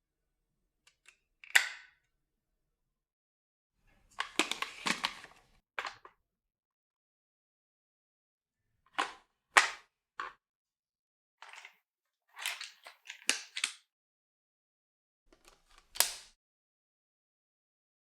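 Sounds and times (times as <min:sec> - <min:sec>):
plastic parts clicking and snapping: 0:15.3 - 0:16.3.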